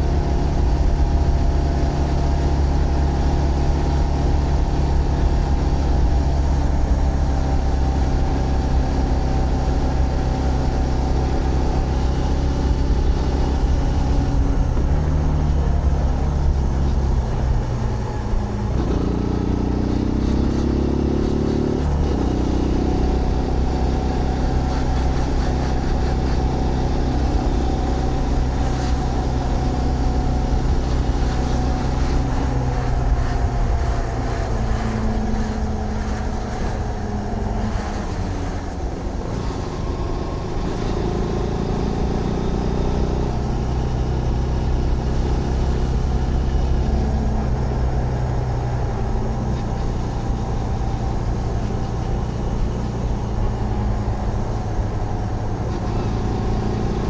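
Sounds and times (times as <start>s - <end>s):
motorcycle engine running: 0.0s - 57.0s.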